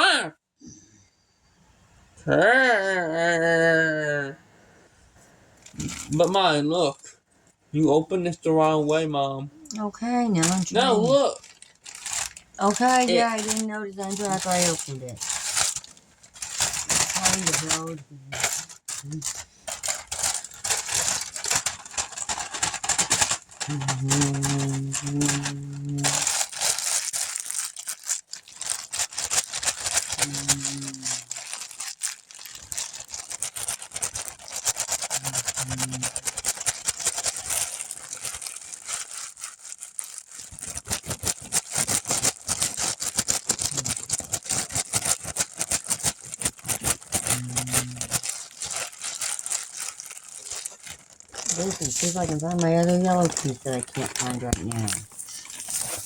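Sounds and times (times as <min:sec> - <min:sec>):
plastic bricks clicking and rattling: 0:51.3 - 0:55.6.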